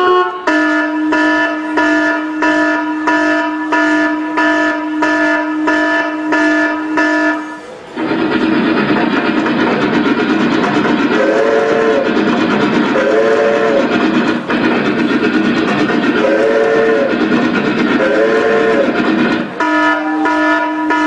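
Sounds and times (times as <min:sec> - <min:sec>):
pulsing horn-like tone: 0:00.0 - 0:07.6, 0:18.0 - 0:19.0, 0:19.6 - 0:21.0
train whistle: 0:00.0 - 0:07.9, 0:10.6 - 0:14.1, 0:15.8 - 0:21.0
moving train rumble: 0:00.0 - 0:21.0.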